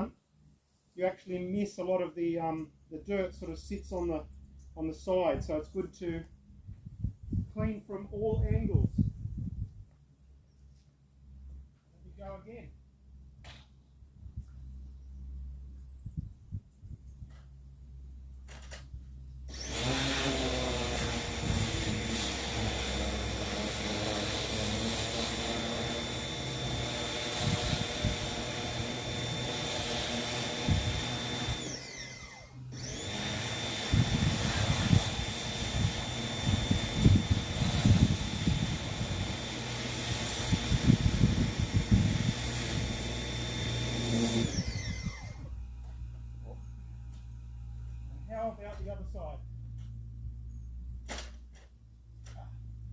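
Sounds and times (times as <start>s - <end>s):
pressure washer motor whine: 19.5s - 48.7s.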